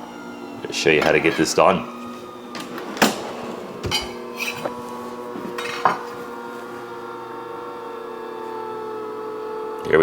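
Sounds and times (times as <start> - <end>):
dishes knocking and clinking: 1.0 - 1.9, 2.5 - 6.8.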